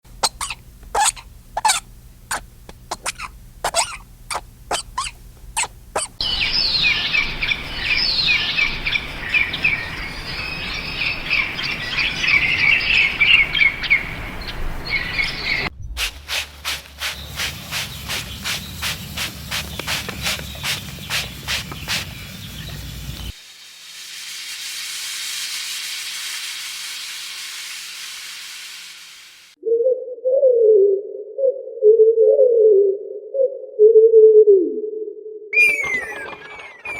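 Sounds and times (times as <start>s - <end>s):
sharp bird calls: 0.2s - 15.7s, 35.6s - 36.9s
birds chirping chorus: 6.2s - 15.7s, 17.1s - 23.3s.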